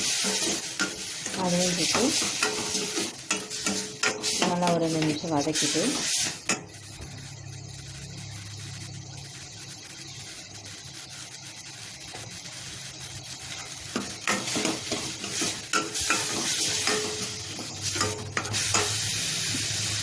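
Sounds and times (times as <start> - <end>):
spoon stirring and scraping pan: 0.0 - 7.2, 12.1 - 19.9
spices sizzling in oil: 0.0 - 20.0.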